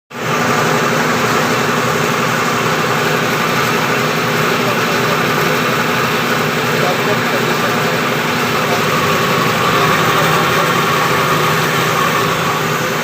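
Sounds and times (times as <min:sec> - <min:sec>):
air compressor humming and hissing: 0:00.2 - 0:13.0.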